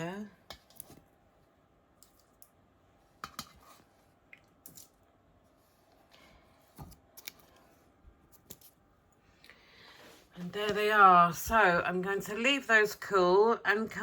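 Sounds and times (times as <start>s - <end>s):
faint clicks and taps of kitchen items: 3.2s - 5.0s.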